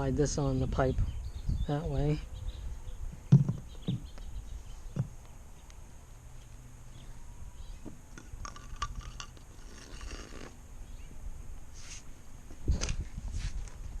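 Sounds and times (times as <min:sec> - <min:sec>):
plastic parts knocking: 0:03.3 - 0:04.0.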